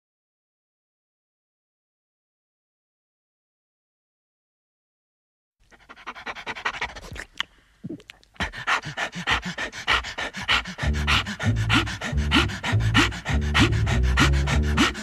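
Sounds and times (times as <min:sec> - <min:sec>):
large dog panting: 0:05.7 - 0:07.4, 0:08.4 - 0:15.0.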